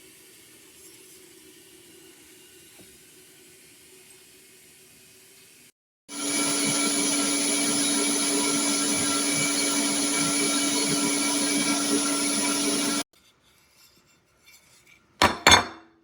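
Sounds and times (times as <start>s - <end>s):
meat grinder motor whining: 6.1s - 13.0s.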